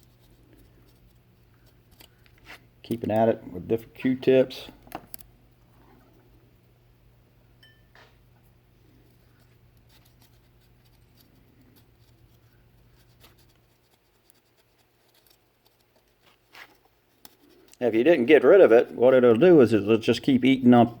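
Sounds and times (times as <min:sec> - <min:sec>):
faint steady hum: 0:00.0 - 0:21.0
cotton swab scrubbing metal: 0:09.1 - 0:20.0.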